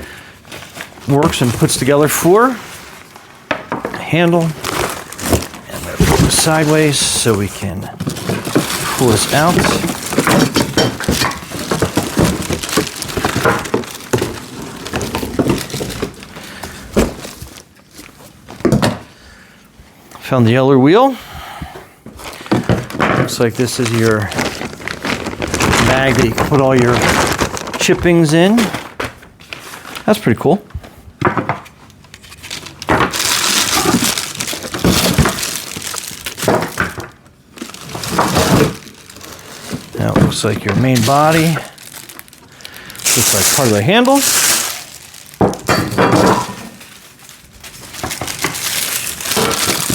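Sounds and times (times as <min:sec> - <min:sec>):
plastic wrap crinkling: 0:00.0 - 0:18.5, 0:22.2 - 0:30.5, 0:31.9 - 0:49.9
cardboard box crackling and scraping: 0:23.8 - 0:27.8.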